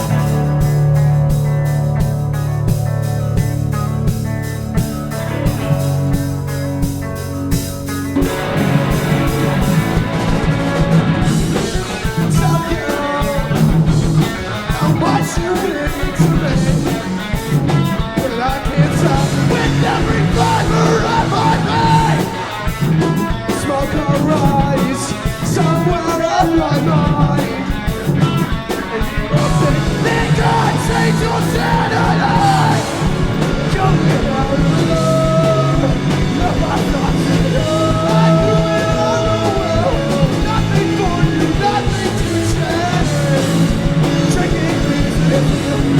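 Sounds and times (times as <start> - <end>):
live rock band playing: 0.0 - 45.9
person singing: 11.6 - 45.9.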